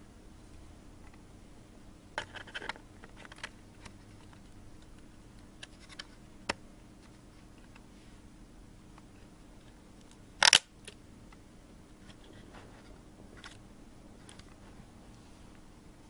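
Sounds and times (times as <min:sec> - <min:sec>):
laptop parts clicking and rattling: 0:02.2 - 0:06.2, 0:09.6 - 0:11.0.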